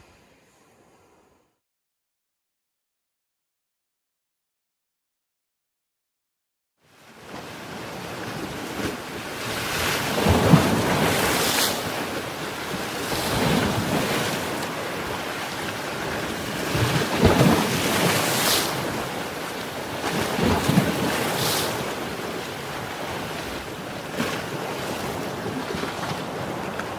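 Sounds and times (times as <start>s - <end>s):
ocean waves breaking: 7.0s - 26.9s
wind noise on microphone: 9.5s - 26.9s.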